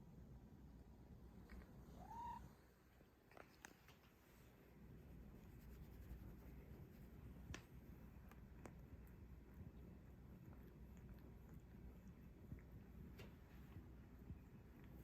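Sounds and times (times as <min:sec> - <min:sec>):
cat mewing: 0:01.9 - 0:02.5.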